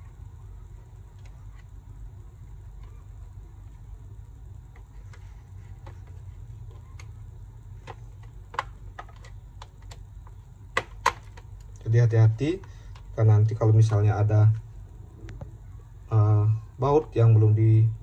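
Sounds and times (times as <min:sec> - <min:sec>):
steady low hum: 0:00.0 - 0:18.0
plastic clips clicking: 0:10.7 - 0:11.8.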